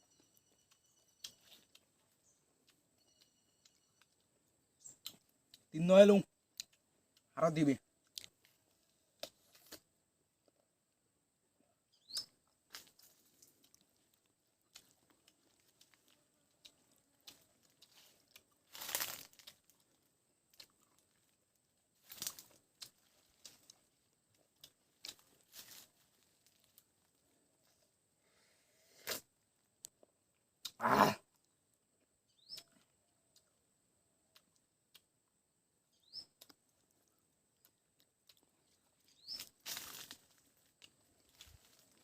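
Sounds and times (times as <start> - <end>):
person chewing and sucking lemon: 12.9 - 21.4, 36.3 - 42.0.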